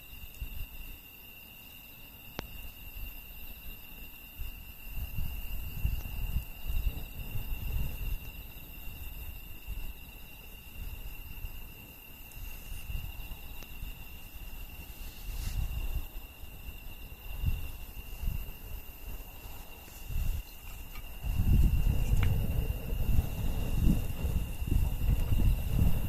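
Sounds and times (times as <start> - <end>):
campfire crackling: 0.0 - 26.0
insects trilling: 0.0 - 26.0
low uneven rumble: 10.8 - 26.0.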